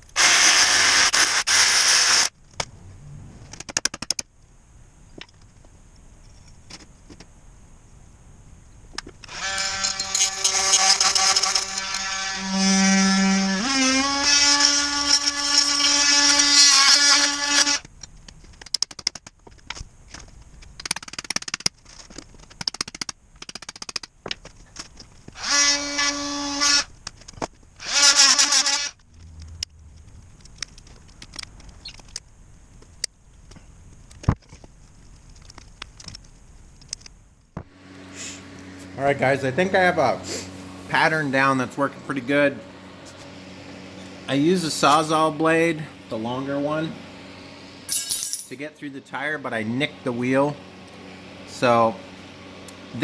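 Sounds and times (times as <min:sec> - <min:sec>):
power saw motor whining: 0:00.0 - 0:02.3, 0:09.2 - 0:17.9, 0:25.3 - 0:26.9, 0:37.6 - 0:48.0.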